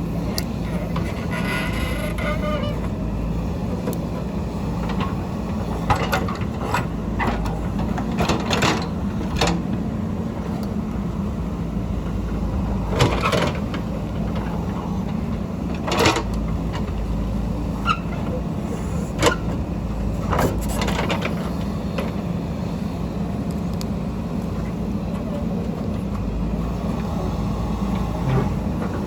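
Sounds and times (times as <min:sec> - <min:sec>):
diesel engine running: 0:00.0 - 0:29.0
digger knocks and clanks: 0:00.2 - 0:22.3.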